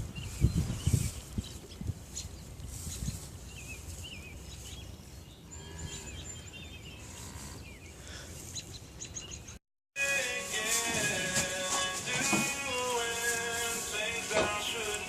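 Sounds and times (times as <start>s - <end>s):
birds chirping: 0.0s - 9.6s.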